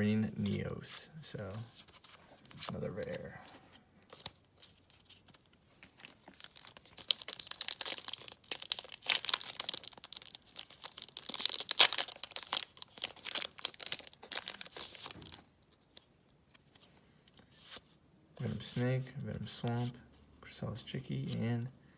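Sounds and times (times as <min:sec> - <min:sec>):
foil wrapper crinkling and tearing: 0:04.1 - 0:15.4.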